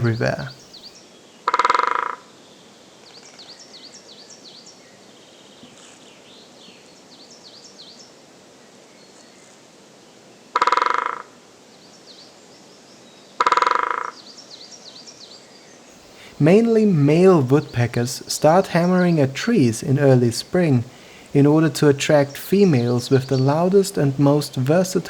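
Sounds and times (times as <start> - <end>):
small birds chirping: 0.0 - 1.0, 16.0 - 25.0
woodpecker drumming on wood: 16.0 - 25.0.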